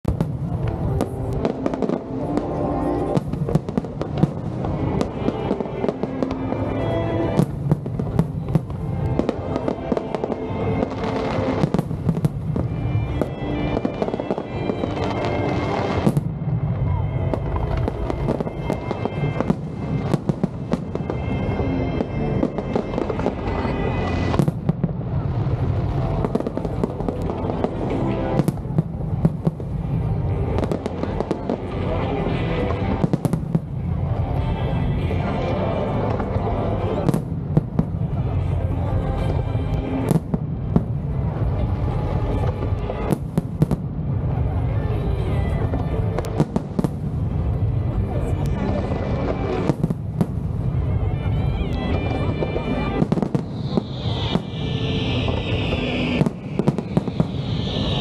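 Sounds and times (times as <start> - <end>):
fireworks bursting: 0.0 - 58.0
music playing: 0.2 - 43.7, 44.7 - 58.0
low rumble: 52.0 - 58.0.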